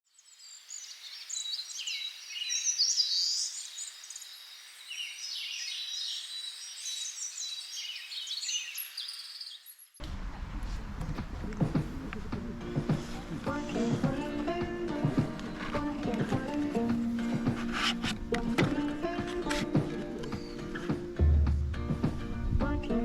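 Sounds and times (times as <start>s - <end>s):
small birds chirping and singing: 0.1s - 10.0s, 13.0s - 21.5s.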